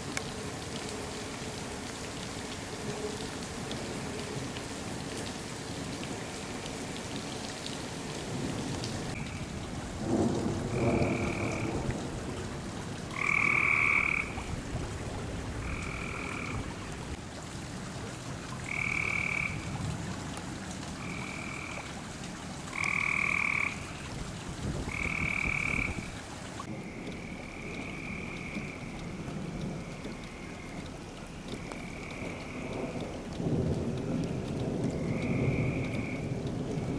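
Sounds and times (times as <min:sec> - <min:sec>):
rain hiss: 0:00.0 - 0:36.9
frogs trilling: 0:10.7 - 0:11.8, 0:13.1 - 0:14.5, 0:15.6 - 0:16.9, 0:18.6 - 0:19.7, 0:21.0 - 0:22.0, 0:22.7 - 0:24.1, 0:24.8 - 0:33.0, 0:35.0 - 0:36.9.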